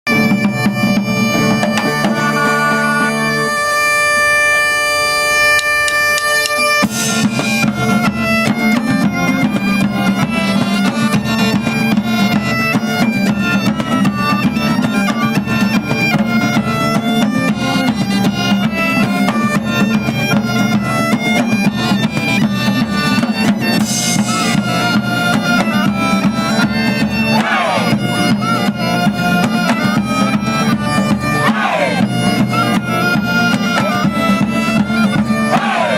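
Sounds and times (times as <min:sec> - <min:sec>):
bagpipe music: 0:00.1 - 0:35.9
drums playing dense rhythm: 0:00.1 - 0:35.9.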